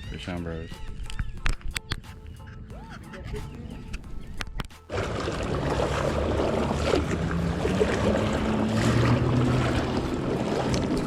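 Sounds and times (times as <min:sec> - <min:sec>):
water: 0:02.5 - 0:11.0
low engine hum: 0:04.9 - 0:11.0.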